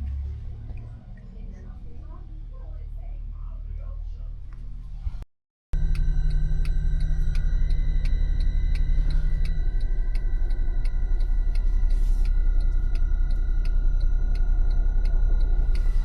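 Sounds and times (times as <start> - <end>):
car engine and road rumble: 0.0 - 5.2, 5.8 - 16.0
turn signal clicking: 5.8 - 16.0.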